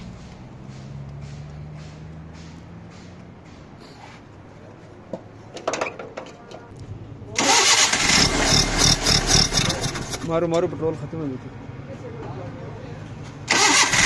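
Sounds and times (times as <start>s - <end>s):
engine running rough: 0.0s - 3.8s, 7.4s - 11.4s, 13.2s - 14.0s.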